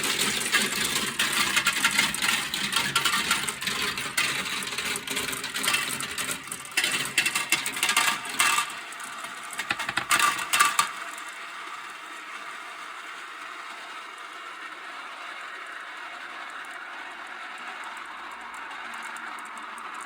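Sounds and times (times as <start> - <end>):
marbles clicking on plastic track: 0.0 - 11.2, 15.2 - 20.0.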